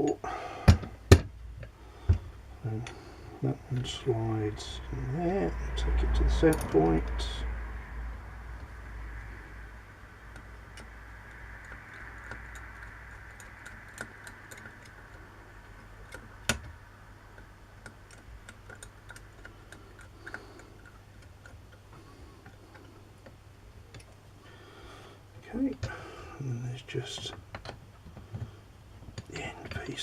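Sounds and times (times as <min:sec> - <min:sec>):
small metallic clicks: 0:06.3 - 0:07.1, 0:10.2 - 0:24.4.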